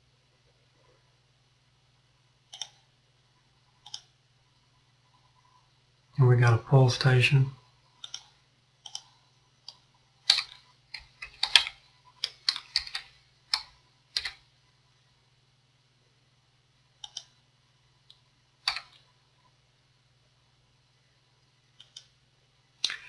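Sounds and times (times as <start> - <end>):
faint low hum: 0.0 - 23.0
keyboard and mouse clicks: 2.5 - 2.8, 3.8 - 4.1, 8.0 - 14.4, 17.0 - 17.4, 18.1 - 19.0, 21.8 - 22.2.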